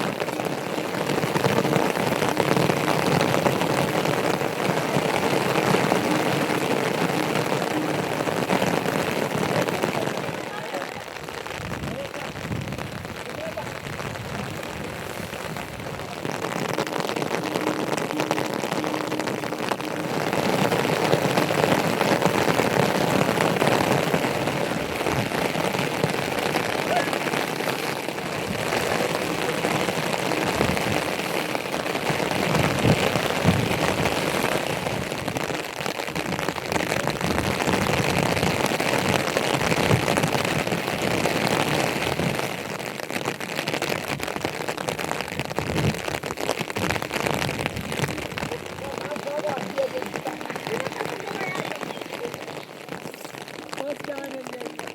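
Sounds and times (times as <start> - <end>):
heavy rain hissing: 0.0 - 54.9.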